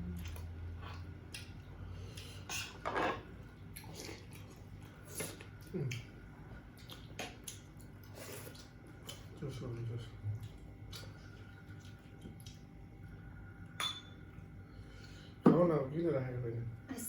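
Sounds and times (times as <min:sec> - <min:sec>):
dishes and utensils clinking: 0:02.8 - 0:03.3, 0:13.8 - 0:14.3.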